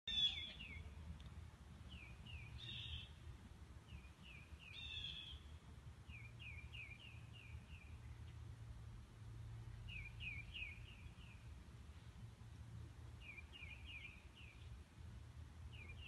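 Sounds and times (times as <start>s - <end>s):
harsh bird calls: 0.1s - 0.8s
faint low rumble: 0.1s - 16.0s
songbirds chirping: 0.1s - 16.0s.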